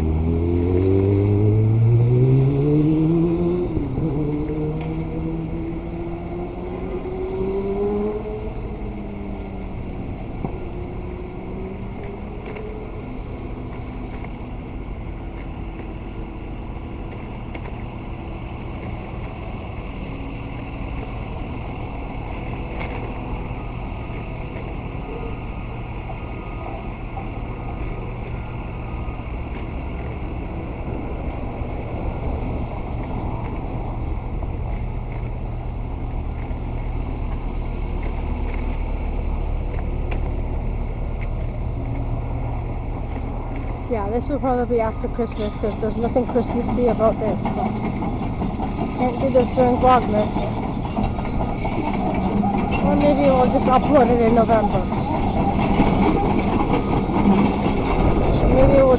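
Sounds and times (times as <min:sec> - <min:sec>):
vehicle engine rising and falling: 0:00.0 - 0:09.2
traffic rumble: 0:00.0 - 0:58.9.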